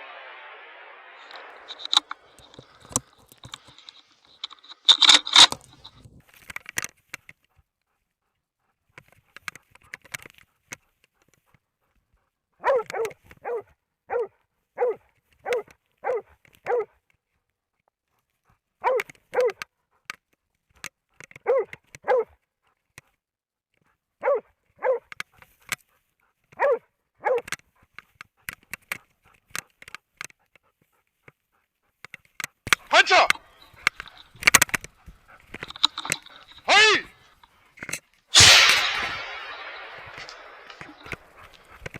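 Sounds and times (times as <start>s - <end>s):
dog barking: 12.6s - 17.0s, 18.8s - 19.6s, 21.4s - 22.4s, 24.2s - 25.1s, 26.6s - 27.5s.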